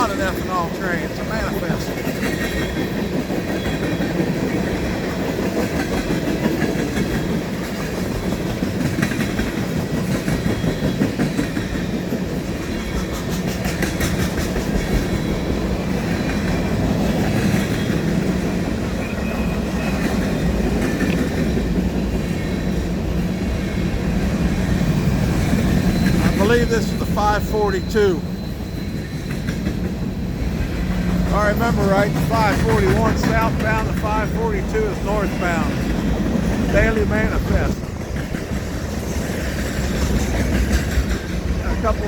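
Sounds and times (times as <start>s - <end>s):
wheels clacking over rail joints: 0.0s - 27.0s, 28.9s - 42.0s
train wheels rumbling on rail: 0.0s - 42.0s.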